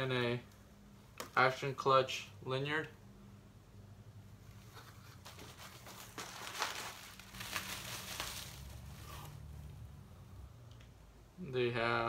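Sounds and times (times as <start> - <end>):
plastic packaging crinkling: 4.7 - 9.4.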